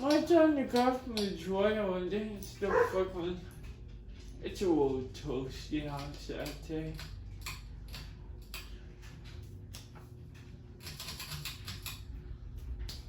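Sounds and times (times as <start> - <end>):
light clicking and ticking: 0.0 - 1.8
ceiling fan humming: 0.0 - 13.0.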